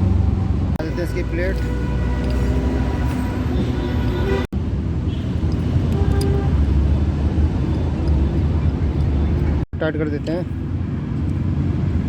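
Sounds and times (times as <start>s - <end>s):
vehicle rumble: 0.0s - 12.0s.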